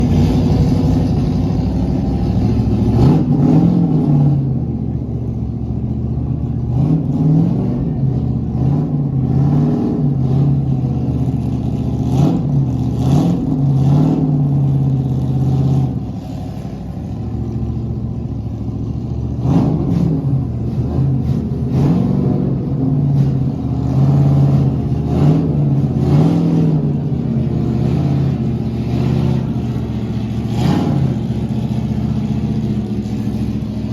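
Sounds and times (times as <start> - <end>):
race car engines revving: 0.0 - 33.9.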